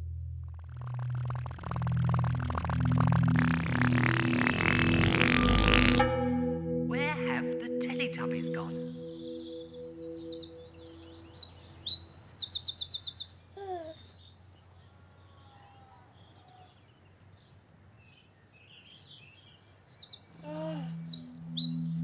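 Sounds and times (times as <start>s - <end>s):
low held tones: 0.0s - 12.2s, 20.4s - 22.0s
birds chirping and trilling: 0.8s - 13.5s, 19.2s - 22.0s.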